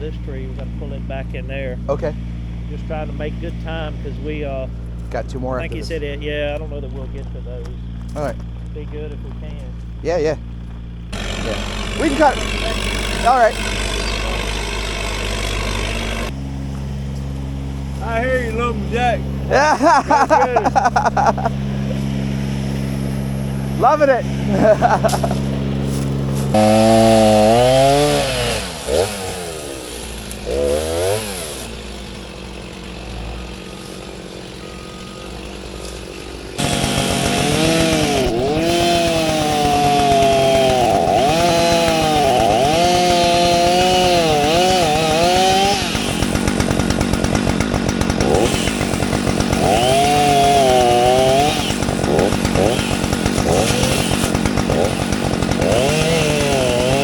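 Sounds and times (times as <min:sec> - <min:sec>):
chainsaw revving and cutting: 0:00.0 - 0:57.0.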